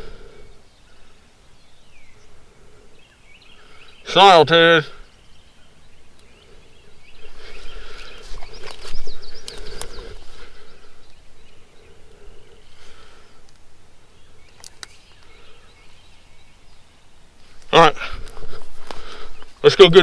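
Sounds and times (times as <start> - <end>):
songbirds singing: 0.0 - 20.0
rustling handling noise: 7.5 - 10.6
sharp clicks: 14.5 - 15.3.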